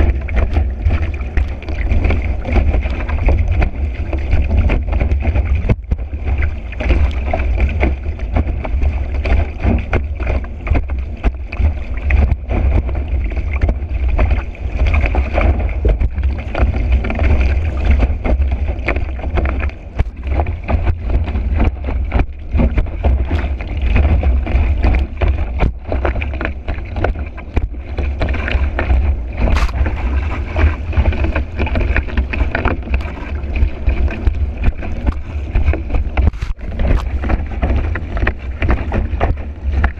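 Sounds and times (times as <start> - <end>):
board knocking and splashing on water: 0.0 - 39.9
low rumble: 0.0 - 39.9
wind buffeting microphone: 0.0 - 39.9.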